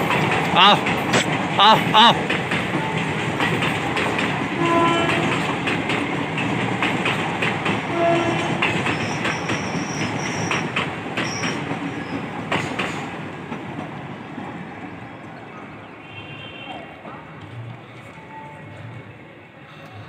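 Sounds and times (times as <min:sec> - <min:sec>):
train wheels clattering over rail joints: 0:00.0 - 0:01.6, 0:02.2 - 0:14.5
train horn blasts: 0:04.6 - 0:05.5, 0:07.9 - 0:08.8, 0:16.0 - 0:17.0.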